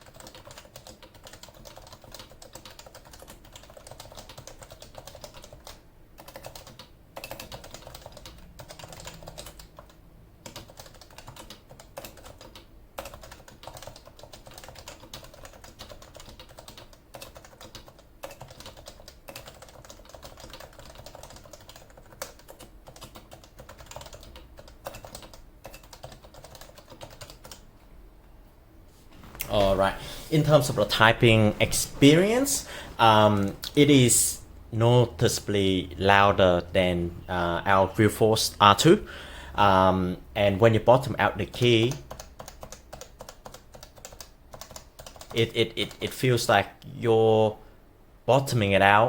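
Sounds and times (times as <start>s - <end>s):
rapid keyboard typing: 0.0s - 27.7s, 39.6s - 46.6s.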